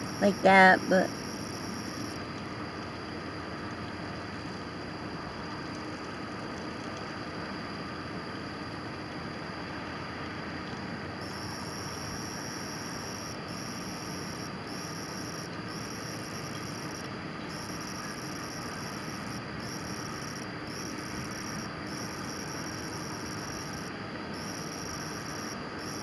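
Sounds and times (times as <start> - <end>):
insects trilling: 0.0 - 2.2, 11.2 - 26.0.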